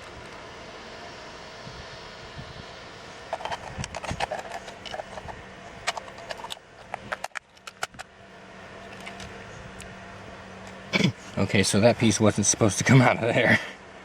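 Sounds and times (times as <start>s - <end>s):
steady low hum: 0.0s - 14.0s
plastic and metal parts clicking: 3.3s - 8.1s, 8.9s - 9.3s.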